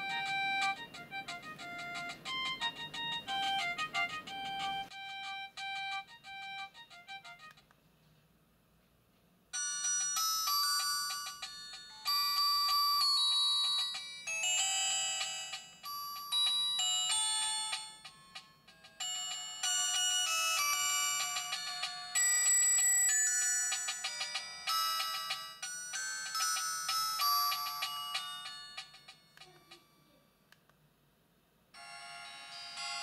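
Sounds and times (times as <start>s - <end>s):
ringtone of short repeated notes: 0.0s - 7.5s, 9.6s - 30.0s
busy ringtone melody: 0.0s - 7.6s, 9.6s - 30.2s, 31.8s - 33.0s.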